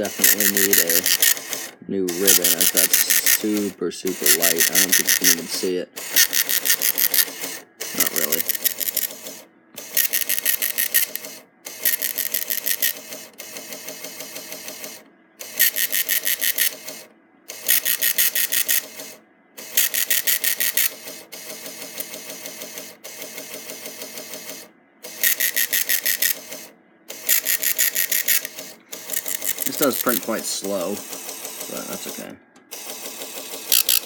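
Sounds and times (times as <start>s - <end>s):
impact printer ticking: 0.0s - 34.0s.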